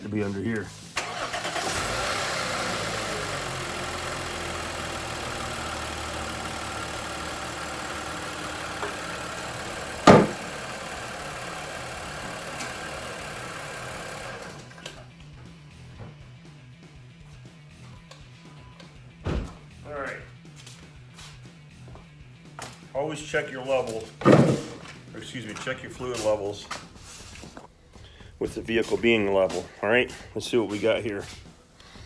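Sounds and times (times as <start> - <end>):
car engine idling: 1.0 - 15.1
loud thump: 10.0 - 10.5, 19.2 - 19.6, 24.2 - 24.8.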